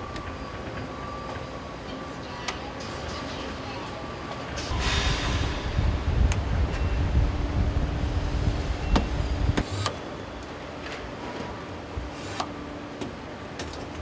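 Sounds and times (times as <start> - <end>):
heavy low machine noise: 4.6 - 10.4
steady machine hum: 4.7 - 10.8.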